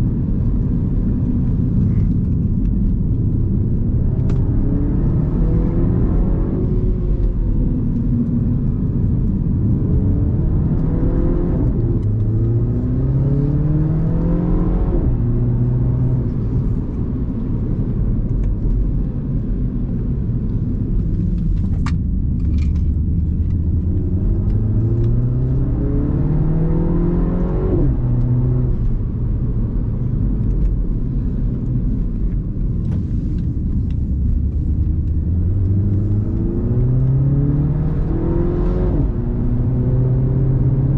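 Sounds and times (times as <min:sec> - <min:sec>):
car engine revving: 0:01.8 - 0:16.8, 0:21.3 - 0:31.0, 0:33.0 - 0:40.9.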